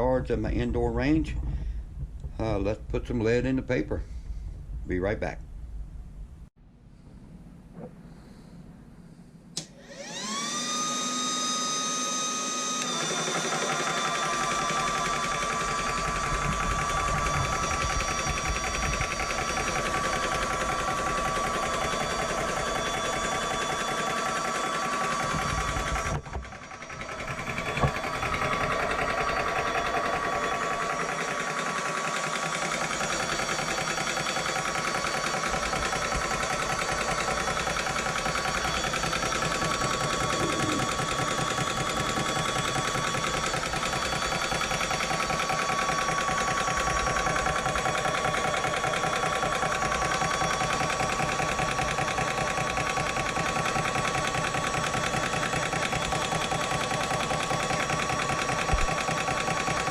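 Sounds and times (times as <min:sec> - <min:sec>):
air compressor humming: 0:06.4 - 0:59.9.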